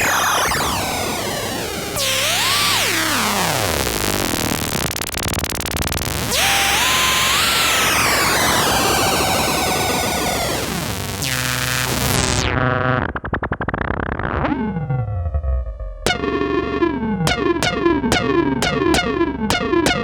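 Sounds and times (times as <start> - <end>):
synthesizer sound effects: 16.1 - 20.0.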